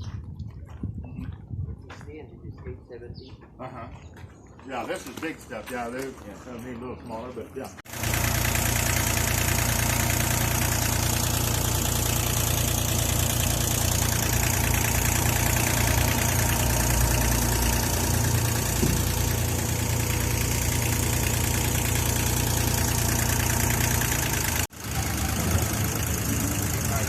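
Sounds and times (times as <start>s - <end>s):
heavy equipment engine idling: 7.9s - 27.0s.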